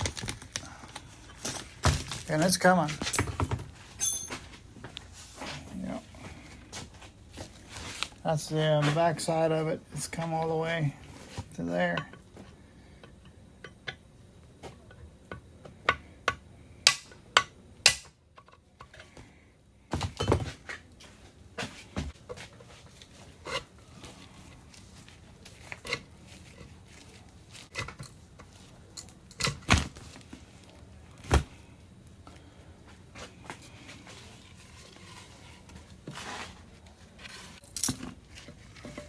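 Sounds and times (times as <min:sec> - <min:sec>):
metal parts and tools clinking: 0:00.0 - 0:04.6, 0:37.5 - 0:39.0.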